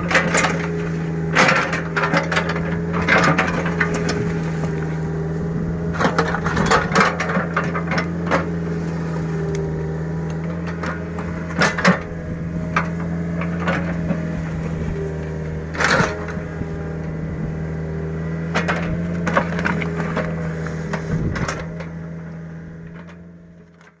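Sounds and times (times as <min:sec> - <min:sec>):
machine clanks and knocks: 0:00.0 - 0:04.8, 0:05.9 - 0:08.6, 0:10.4 - 0:14.8
diesel engine running: 0:00.0 - 0:24.0.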